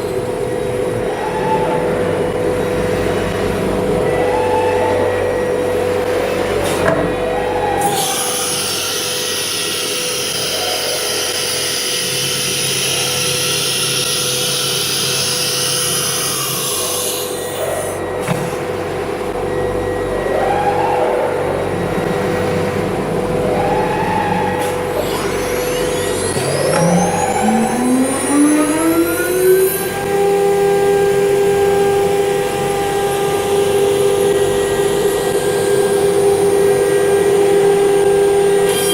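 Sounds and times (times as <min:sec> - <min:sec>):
machine whine: 0:00.0 - 0:38.9.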